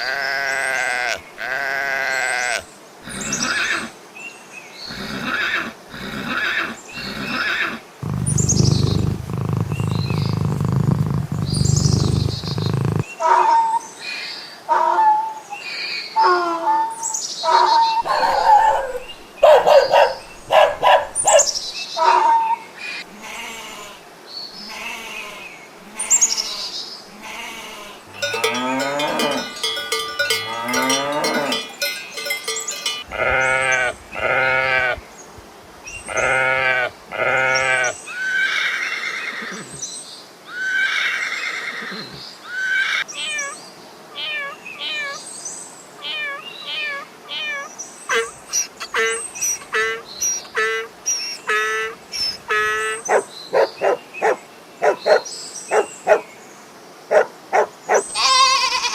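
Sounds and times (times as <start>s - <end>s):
farm animal calls: 27.2s - 35.0s.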